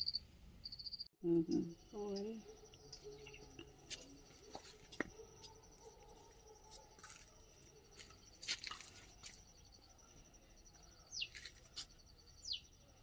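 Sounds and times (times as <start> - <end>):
high bird chirps: 11.0 - 11.5, 12.3 - 12.8.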